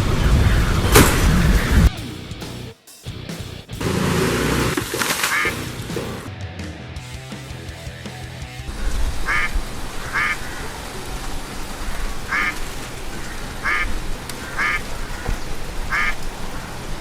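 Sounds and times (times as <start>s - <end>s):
duck quacking: 4.0s - 6.3s, 9.2s - 10.8s, 12.2s - 16.8s
steady background noise: 8.7s - 17.0s.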